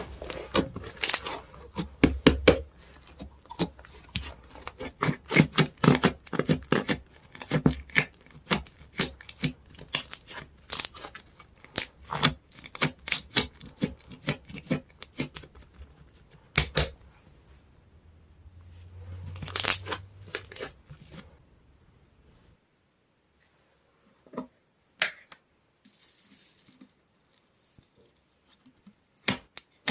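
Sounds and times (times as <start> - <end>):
slime squish: 0.0 - 17.1, 19.1 - 21.3.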